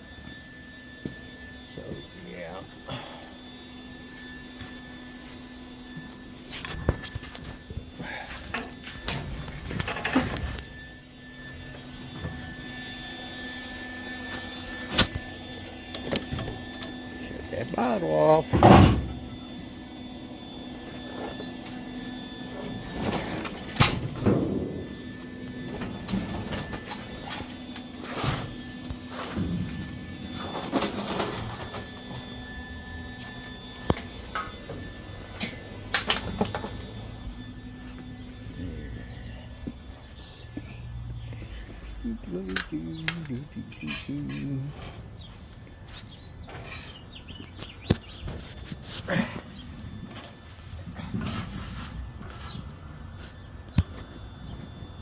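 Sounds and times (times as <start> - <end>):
steady hum: 0.0 - 55.0
man's voice: 42.1 - 44.8.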